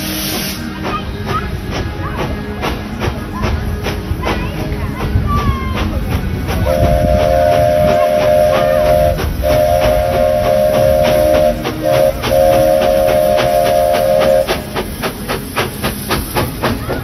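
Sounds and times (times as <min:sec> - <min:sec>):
steam locomotive whistle: 0:00.0 - 0:00.8, 0:06.6 - 0:15.1
steam engine exhaust chuffs: 0:00.0 - 0:17.0.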